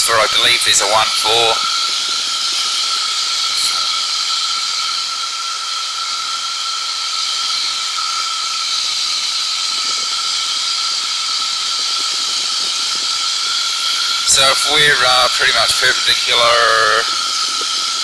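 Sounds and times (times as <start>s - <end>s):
high whine: 0.0s - 4.1s, 14.2s - 17.7s
microlight engine: 0.0s - 18.0s.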